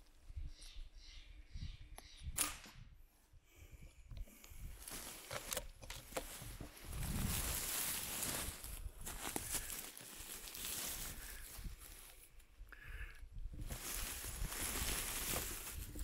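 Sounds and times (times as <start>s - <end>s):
footsteps rustling dry leaves: 4.8s - 12.4s, 13.6s - 16.0s.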